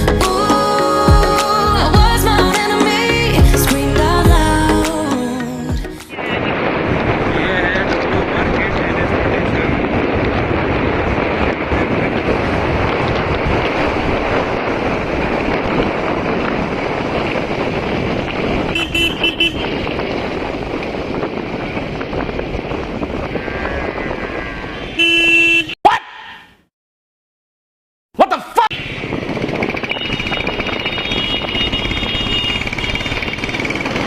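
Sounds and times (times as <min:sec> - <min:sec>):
wind and road rush: 0:00.0 - 0:26.3, 0:28.2 - 0:34.0
vehicle horn honking: 0:18.7 - 0:19.8, 0:24.8 - 0:25.8, 0:29.8 - 0:33.6.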